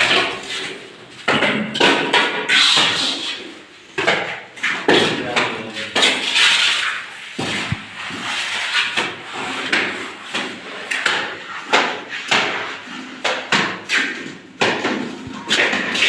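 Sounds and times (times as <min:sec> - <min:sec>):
people talking: 0:05.0 - 0:06.1.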